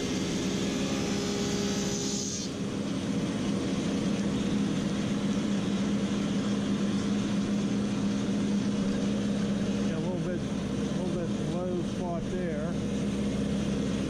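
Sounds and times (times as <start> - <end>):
hissing cutting noise: 0.0 - 2.8
thickness planer motor humming: 0.0 - 14.0.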